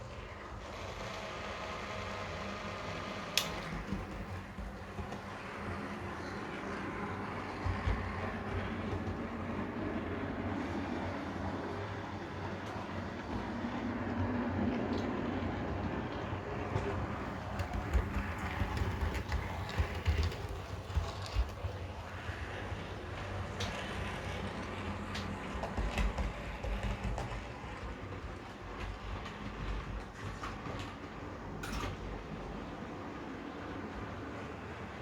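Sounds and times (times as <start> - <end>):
model wheels clicking over rail joints: 1.3 - 6.1, 16.8 - 32.1.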